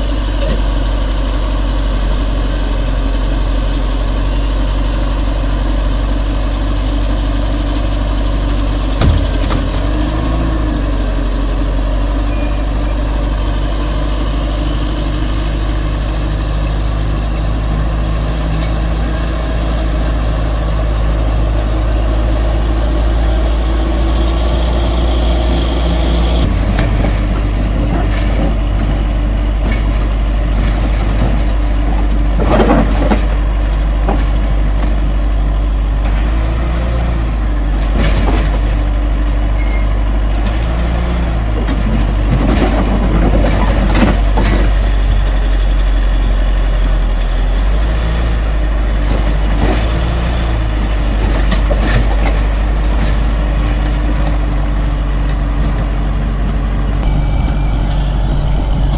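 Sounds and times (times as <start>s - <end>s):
heavy machine engine running: 0.0s - 58.9s
brief screech: 57.0s - 58.9s.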